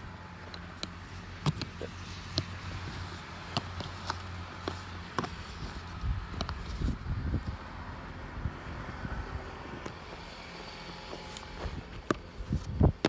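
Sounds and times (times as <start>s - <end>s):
footsteps crunching in snow: 2.2s - 8.1s, 10.0s - 13.0s
wind buffeting microphone: 5.2s - 10.3s, 11.6s - 13.0s.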